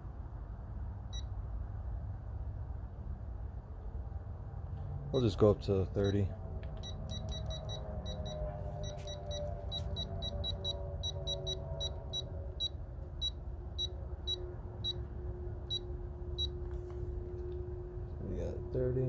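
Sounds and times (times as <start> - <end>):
torque wrench beeping: 6.8 - 15.0.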